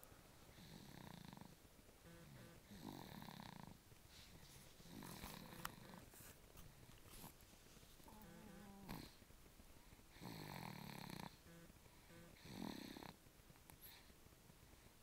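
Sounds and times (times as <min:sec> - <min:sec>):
baby snoring softly: 0:00.5 - 0:06.2, 0:08.0 - 0:09.2, 0:09.8 - 0:14.2.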